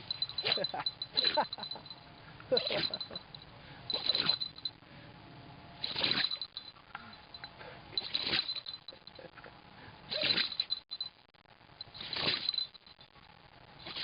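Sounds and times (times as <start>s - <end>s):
dog sneezing: 5.8s - 6.3s, 8.0s - 8.5s, 10.1s - 10.5s, 12.0s - 12.5s.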